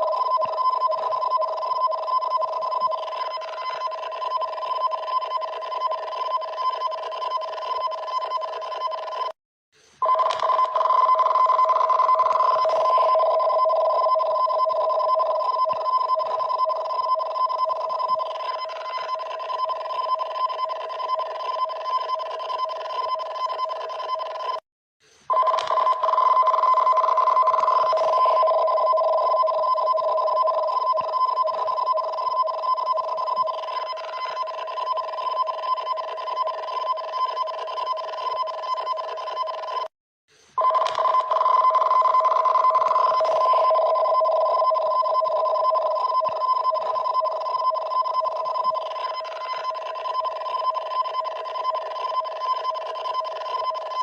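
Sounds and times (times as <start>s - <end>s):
emergency alert alarm tones: 0.0s - 9.4s, 10.0s - 24.6s, 25.3s - 39.9s, 40.6s - 54.0s.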